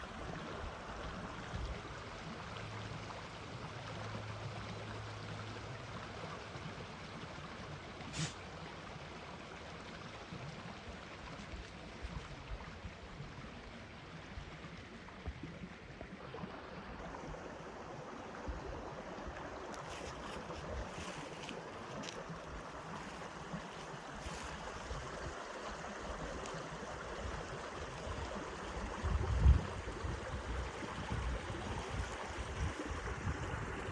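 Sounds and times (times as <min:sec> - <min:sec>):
flowing water rushing: 0:00.0 - 0:33.9.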